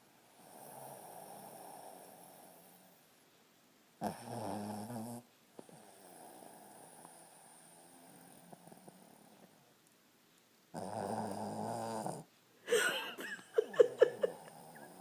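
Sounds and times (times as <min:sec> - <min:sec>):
dog snoring: 0:00.4 - 0:03.0, 0:04.0 - 0:09.6, 0:10.7 - 0:12.3.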